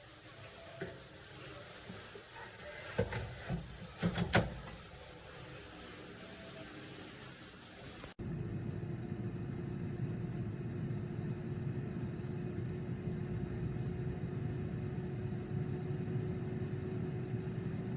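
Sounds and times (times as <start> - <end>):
low mechanical hum and rumble: 8.2 - 17.9.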